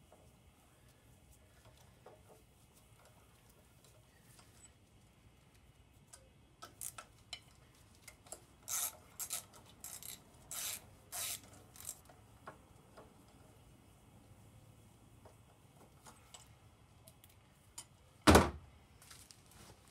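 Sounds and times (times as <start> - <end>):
tools scraping and clicking: 6.1 - 12.2.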